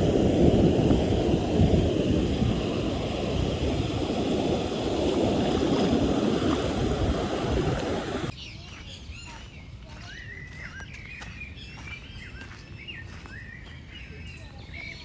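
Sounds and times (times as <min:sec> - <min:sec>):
ocean surf on beach: 0:00.0 - 0:08.3.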